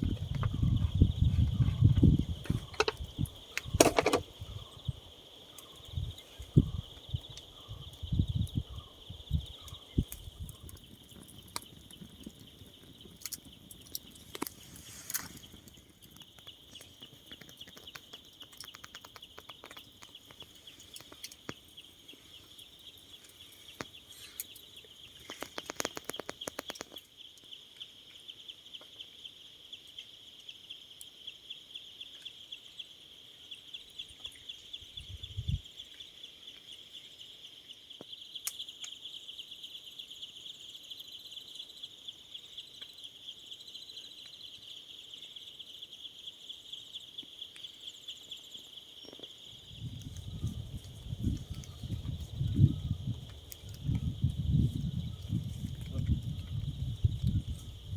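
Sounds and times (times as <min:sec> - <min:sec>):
insects chirring: 0:00.0 - 0:57.9
sharp clicks and crackles: 0:02.4 - 0:04.4, 0:09.4 - 0:21.9, 0:22.5 - 0:27.5.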